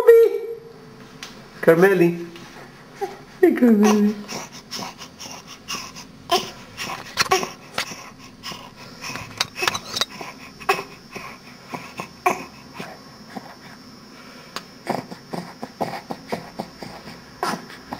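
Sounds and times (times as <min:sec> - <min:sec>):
wheezy breathing: 0:03.9 - 0:17.9.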